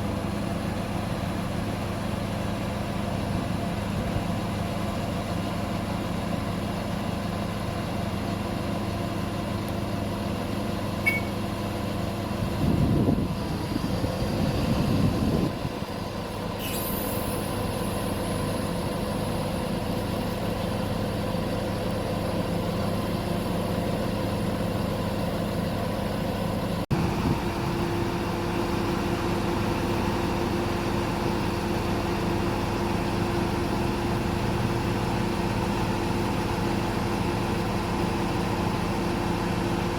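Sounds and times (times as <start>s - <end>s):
crane diesel engine running: 0.0s - 39.9s
short hiss: 16.6s - 18.3s.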